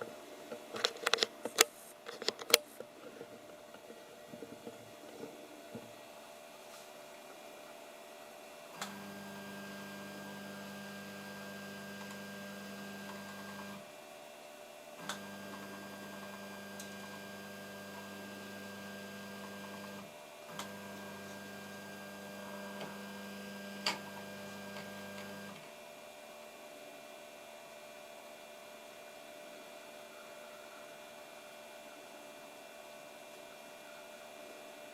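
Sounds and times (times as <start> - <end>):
stepper motor running: 8.8 - 13.8, 15.0 - 25.6.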